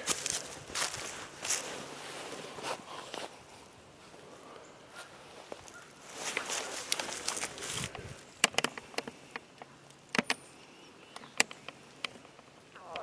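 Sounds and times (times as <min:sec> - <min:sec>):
rustling: 0:00.0 - 0:10.4
firearm metallic clicks: 0:07.9 - 0:10.4.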